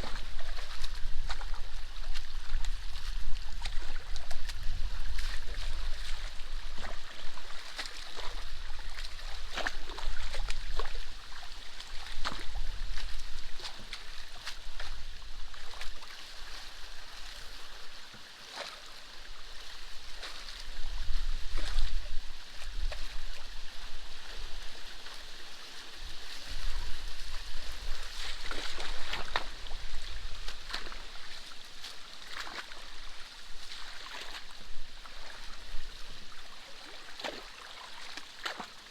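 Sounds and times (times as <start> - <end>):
sharp splashes and knocks: 0.0 - 16.1, 27.8 - 31.5, 32.2 - 32.9, 33.7 - 35.6, 36.8 - 38.8
water trickling in canal: 0.0 - 17.4, 26.6 - 38.9.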